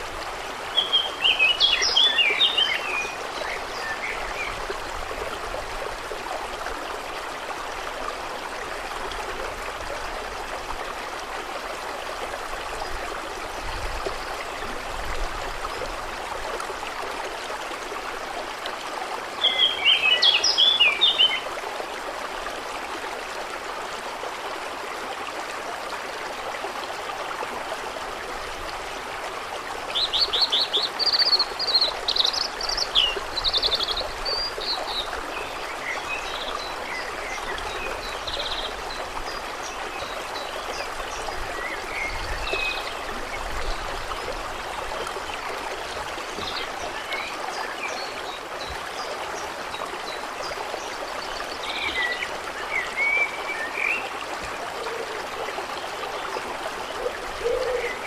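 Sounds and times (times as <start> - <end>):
flowing water: 0.0 - 58.0
birds chirping and trilling: 57.3 - 58.0.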